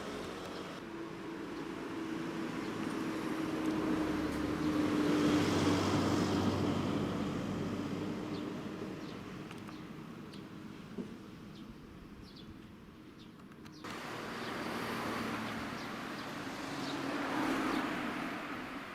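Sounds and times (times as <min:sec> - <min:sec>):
motor vehicle passing by: 0:00.0 - 0:09.2, 0:13.9 - 0:18.9.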